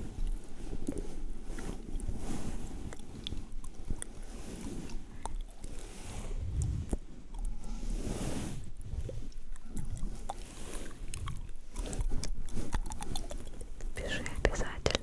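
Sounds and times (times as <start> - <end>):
soft swishes: 5.9 - 9.0.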